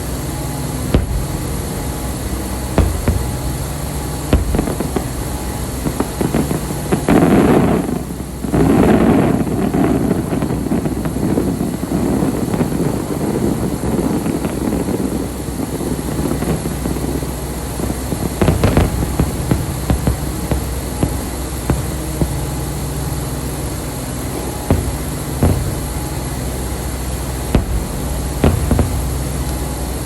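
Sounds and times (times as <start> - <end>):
low rumble: 0.0 - 8.5, 16.7 - 30.0
fireworks bangs and crackles: 0.0 - 30.0.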